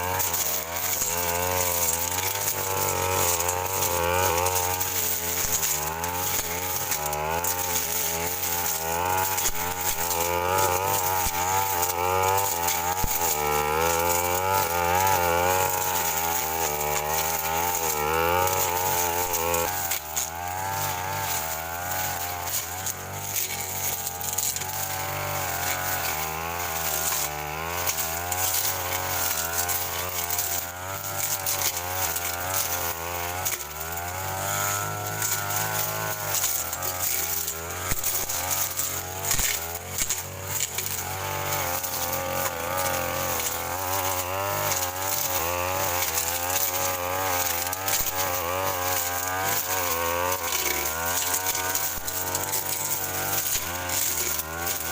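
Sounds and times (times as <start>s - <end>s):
brush cutter engine revving: 0.0s - 54.9s.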